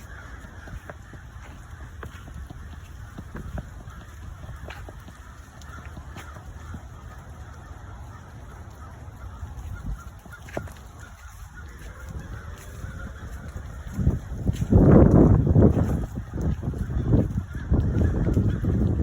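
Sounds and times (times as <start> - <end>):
distant flock of birds chattering: 0.0 - 19.0.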